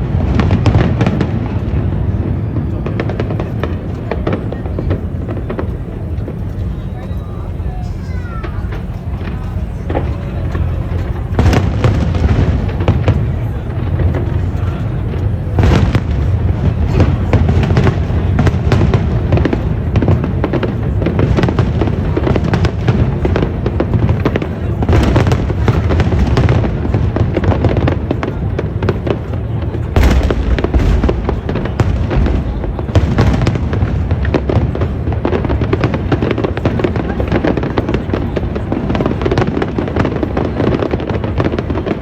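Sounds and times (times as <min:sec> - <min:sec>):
fireworks bangs and booms: 0:00.0 - 0:42.0.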